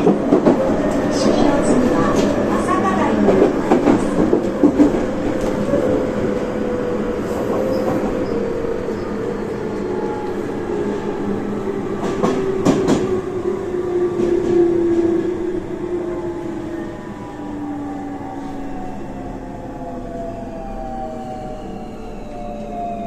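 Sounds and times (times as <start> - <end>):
train running rumble: 0.0 - 10.3.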